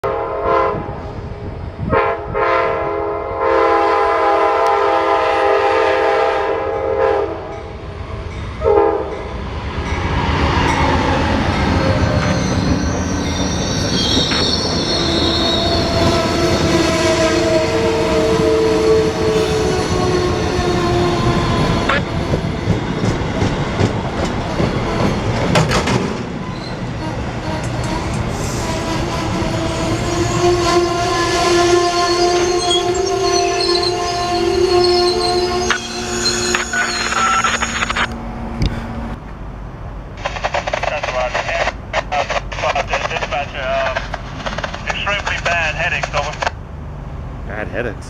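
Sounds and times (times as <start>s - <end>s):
locomotive horn blasts: 0.0s - 1.0s, 1.9s - 7.5s, 8.6s - 9.2s, 29.9s - 37.0s
train wheel squeal: 10.0s - 17.6s, 26.4s - 28.8s, 29.8s - 38.1s
train wheel rumble and clatter: 14.0s - 31.4s, 37.0s - 46.6s.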